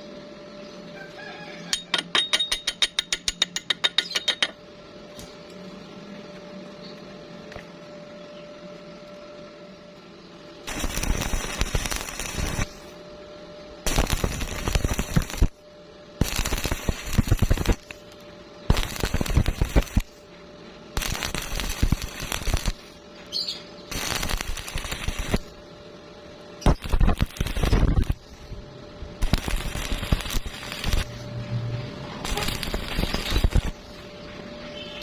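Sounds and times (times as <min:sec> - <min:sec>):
welding arc crackling: 0:10.6 - 0:13.0, 0:13.8 - 0:15.6, 0:16.2 - 0:20.2, 0:21.0 - 0:25.7, 0:26.6 - 0:34.2.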